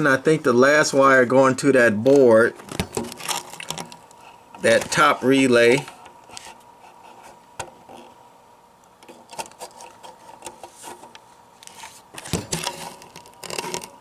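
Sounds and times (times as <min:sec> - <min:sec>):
faint high hum: 0:00.0 - 0:13.9
handling clicks and rustles: 0:02.1 - 0:06.4, 0:09.0 - 0:14.0.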